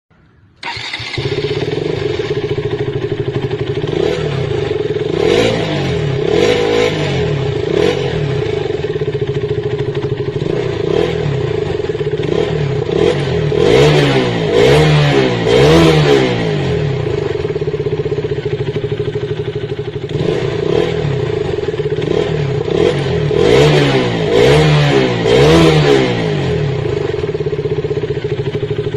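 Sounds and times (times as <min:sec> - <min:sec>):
motorcycle engine idling: 0:00.2 - 0:14.6, 0:15.4 - 0:24.3, 0:25.1 - 0:28.9.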